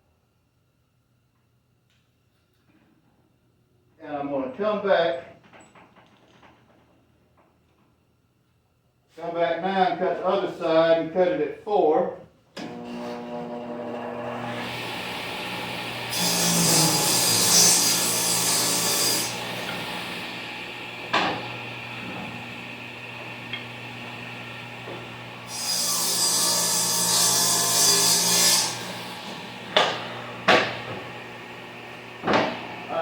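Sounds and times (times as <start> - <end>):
table saw cutting plywood: 12.6 - 33.0.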